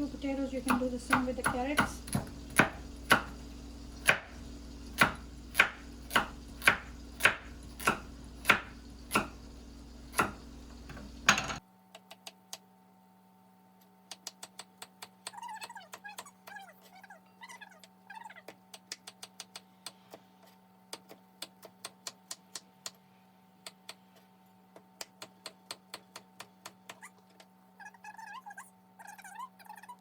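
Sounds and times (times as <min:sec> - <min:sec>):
knife chopping vegetables on board: 0:00.6 - 0:03.4, 0:04.0 - 0:09.4, 0:10.1 - 0:10.4, 0:18.4 - 0:23.0, 0:24.7 - 0:27.1.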